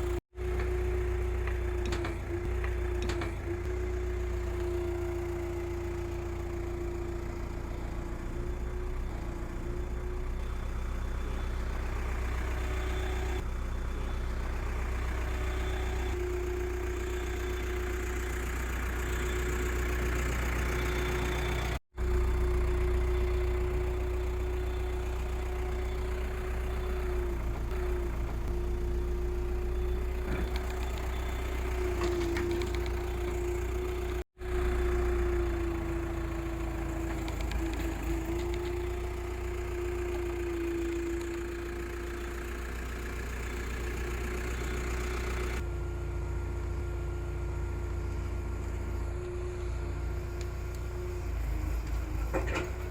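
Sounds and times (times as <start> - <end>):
excavator diesel engine rumbling: 0.0 - 52.9.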